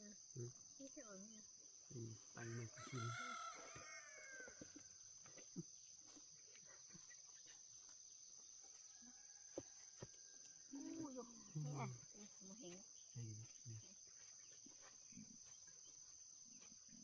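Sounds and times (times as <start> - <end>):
high-pitched insect drone: 0.0 - 9.5
rooster crowing: 2.4 - 4.9, 8.9 - 10.7.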